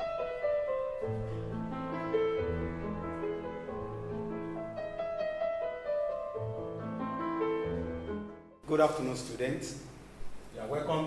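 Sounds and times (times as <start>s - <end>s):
piano melody with bass notes: 0.0s - 8.7s.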